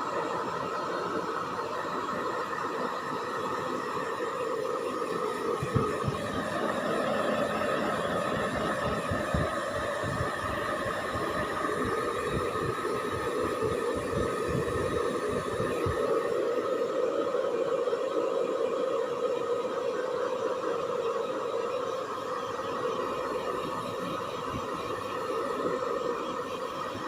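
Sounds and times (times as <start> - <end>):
hair dryer running: 0.0 - 18.7.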